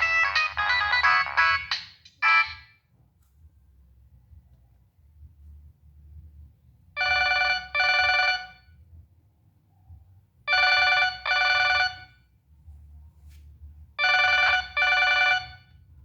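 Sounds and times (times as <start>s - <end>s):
phone ringtone like telephone bell: 0.0s - 2.6s, 7.0s - 8.6s, 10.5s - 12.1s, 14.0s - 15.7s.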